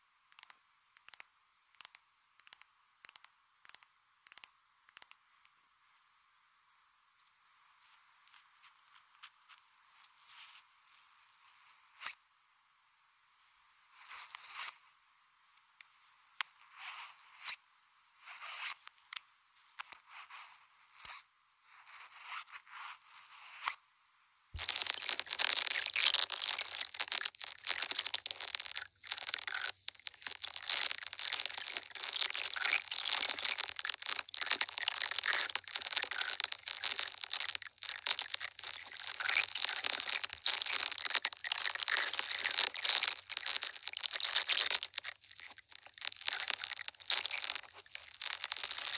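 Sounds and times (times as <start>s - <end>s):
faint low hum: 0.0s - 26.8s
crackling and tapping: 0.3s - 5.6s, 7.2s - 12.2s, 15.5s - 17.6s, 18.2s - 21.2s, 24.6s - 48.9s
scratchy rustles: 7.2s - 12.2s, 13.8s - 14.9s, 15.9s - 17.6s, 18.2s - 23.8s, 24.6s - 48.9s.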